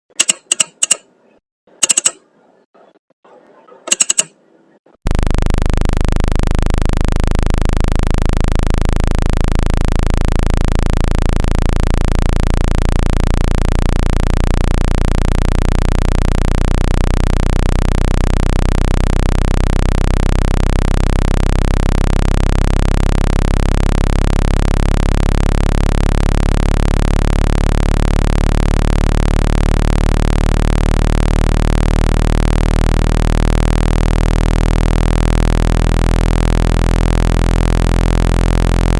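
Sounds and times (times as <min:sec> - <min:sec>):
loud low buzzing tone: 0:05.1 - 0:38.9.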